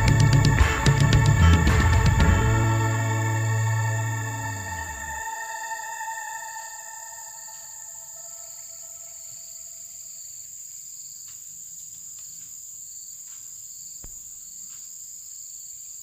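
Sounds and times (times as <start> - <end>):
background music: 0.0 - 9.7
insects chirring: 2.4 - 16.0.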